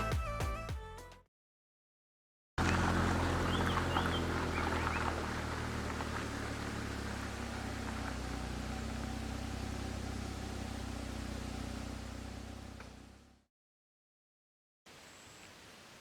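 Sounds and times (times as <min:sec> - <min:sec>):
road and tyre hiss: 0:02.6 - 0:13.2
car engine hum: 0:02.6 - 0:13.4.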